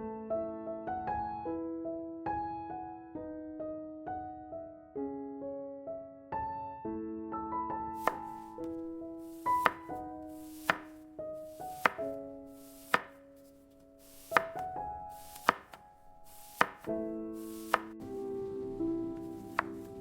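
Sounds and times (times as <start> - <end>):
gentle piano music: 0.0 - 20.0
knife chopping on cutting board: 8.0 - 18.0, 19.5 - 20.0.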